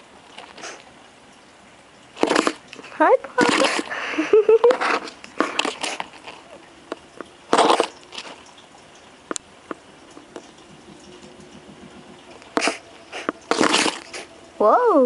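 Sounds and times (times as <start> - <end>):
cockatiel hissing: 0.5 - 0.8, 12.6 - 14.3.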